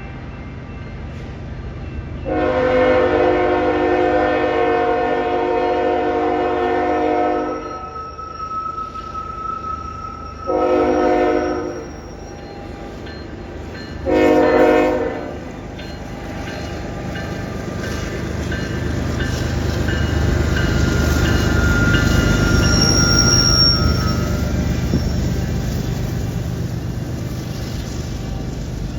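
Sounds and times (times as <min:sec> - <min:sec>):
locomotive air horn blasts: 0:02.3 - 0:07.8, 0:10.5 - 0:11.8, 0:14.0 - 0:15.4
locomotive engine rumble: 0:09.0 - 0:28.9.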